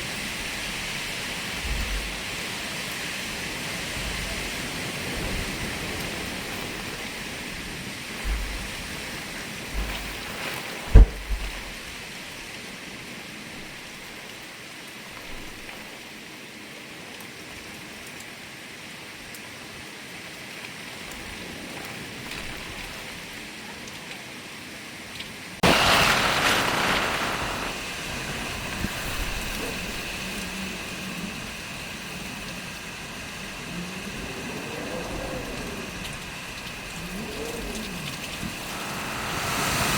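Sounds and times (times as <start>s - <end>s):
heavy rain and wind: 0.0s - 14.4s, 20.7s - 39.9s
loud thump: 10.9s - 11.7s.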